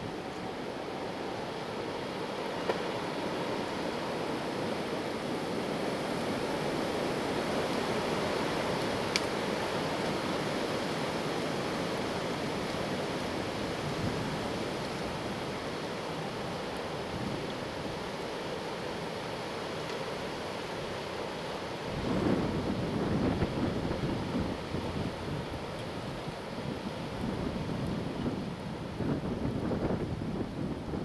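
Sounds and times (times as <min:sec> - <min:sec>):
strong wind blowing: 0:21.9 - 0:31.0.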